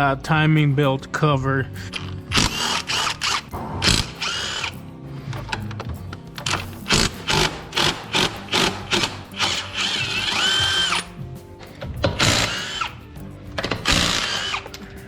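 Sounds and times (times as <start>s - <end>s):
ratchet wrench strokes: 1.8s - 5.8s, 6.4s - 15.0s
power tool whining: 2.0s - 4.8s, 6.4s - 11.2s, 11.9s - 14.9s.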